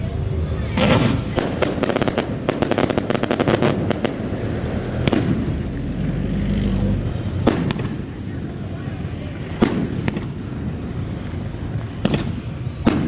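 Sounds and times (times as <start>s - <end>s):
fireworks crackling: 0.0s - 13.0s
firework bang: 0.6s - 8.4s, 9.6s - 10.8s, 11.7s - 13.0s.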